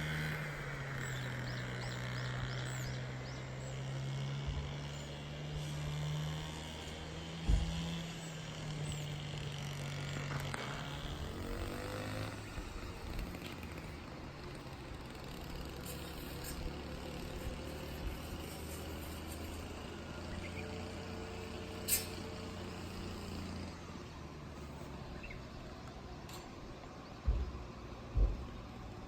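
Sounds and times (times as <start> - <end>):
low engine drone: 0.0 - 29.0
low thumps: 7.4 - 8.0, 27.2 - 28.8.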